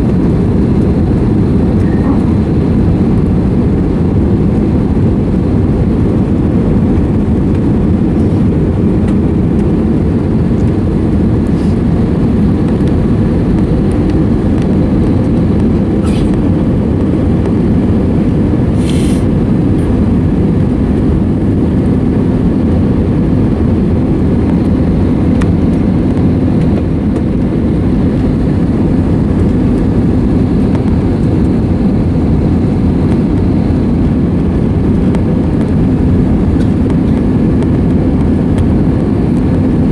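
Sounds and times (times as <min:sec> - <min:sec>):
airplane cabin roar: 0:00.0 - 0:39.9.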